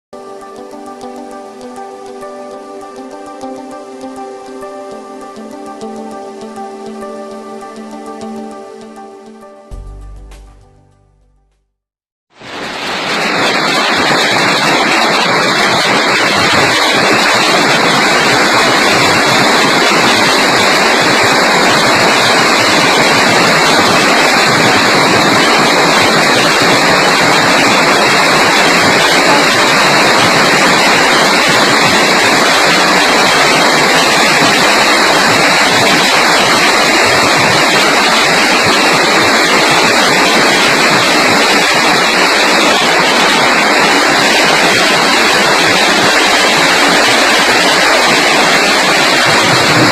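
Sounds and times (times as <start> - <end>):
hail and heavy rain: 12.4 - 49.9.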